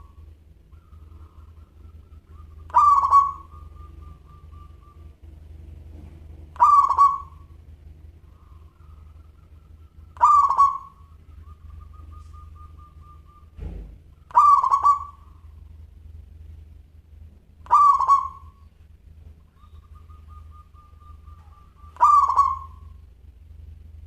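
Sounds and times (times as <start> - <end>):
soft trilled coo: 0.0 - 5.2, 19.5 - 23.0
dove cooing: 0.0 - 15.8, 17.6 - 18.8, 19.4 - 23.2
low thump: 13.6 - 14.0.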